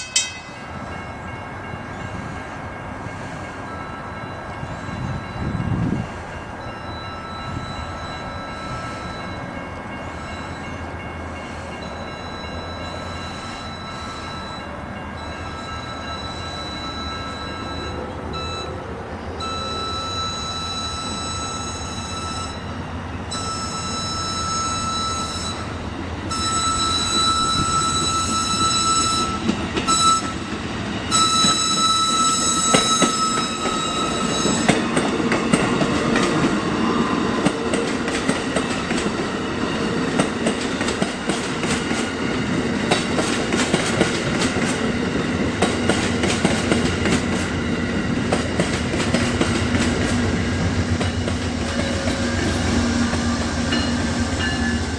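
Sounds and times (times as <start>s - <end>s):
train wheels clacking on rail joints: 0.0s - 2.2s, 26.3s - 54.9s
train whistle blasts: 23.3s - 25.7s, 26.3s - 30.5s, 31.1s - 35.0s, 51.6s - 54.9s.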